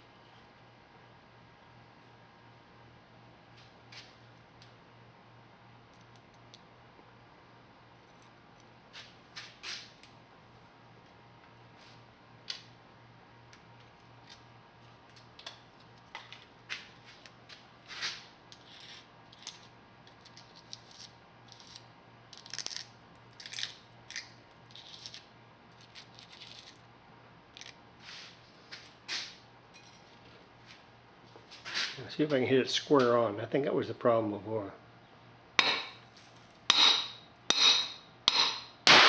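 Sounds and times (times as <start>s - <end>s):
low steady hum: 32.0s - 39.0s
tools clicking and scraping: 36.7s - 39.0s.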